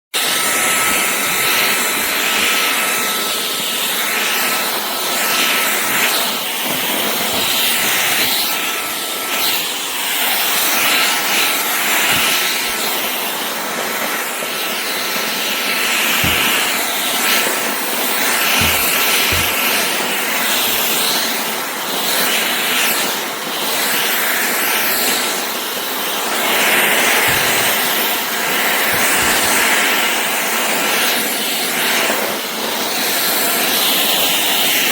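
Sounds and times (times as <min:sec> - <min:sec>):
cordless vacuum running: 0:00.2 - 0:34.9.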